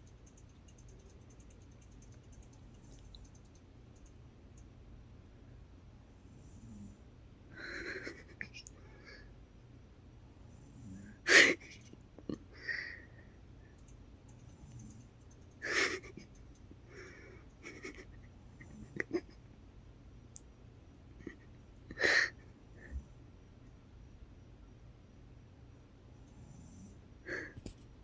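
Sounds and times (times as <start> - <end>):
faint breathing: 8.8 - 9.4, 12.5 - 13.8, 16.8 - 18.0.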